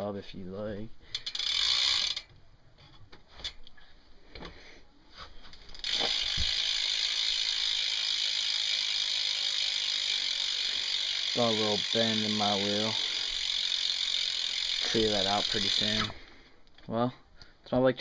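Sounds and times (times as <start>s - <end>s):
bicycle hub ratcheting buzz: 1.1s - 2.3s, 5.7s - 16.3s.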